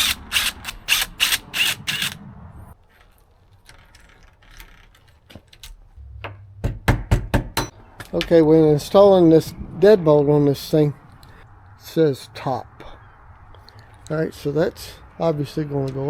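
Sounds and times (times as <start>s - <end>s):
rasping mechanical strokes: 0.0s - 2.3s.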